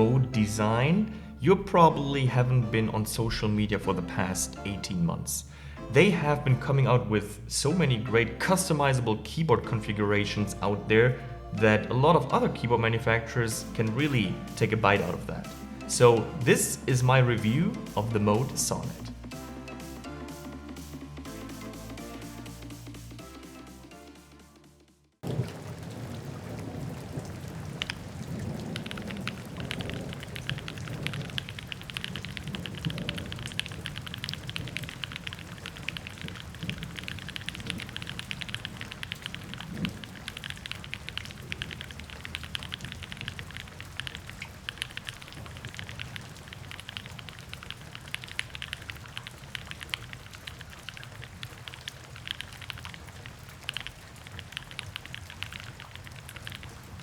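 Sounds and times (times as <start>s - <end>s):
mechanical keyboard typing: 27.8s - 57.0s.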